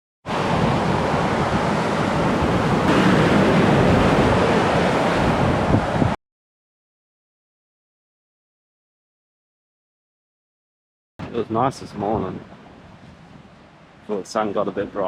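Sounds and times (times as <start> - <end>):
ocean surf washing onto beach: 0.3 - 6.2.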